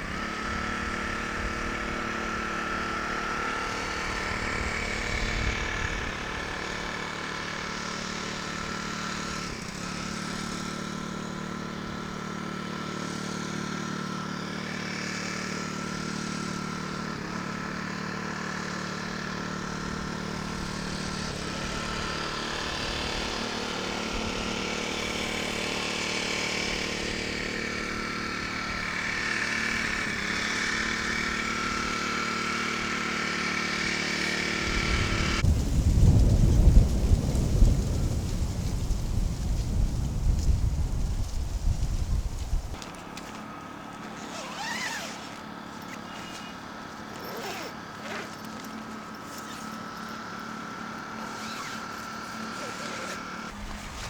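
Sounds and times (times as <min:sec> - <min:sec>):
wind buffeting microphone: 0:34.6 - 0:42.8.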